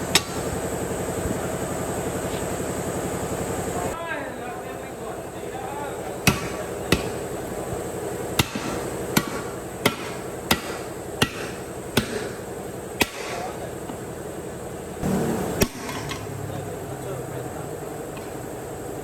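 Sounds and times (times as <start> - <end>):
steady background hum: 0.0 - 19.0
hammer blows: 6.2 - 7.4, 8.4 - 13.6, 15.0 - 16.6.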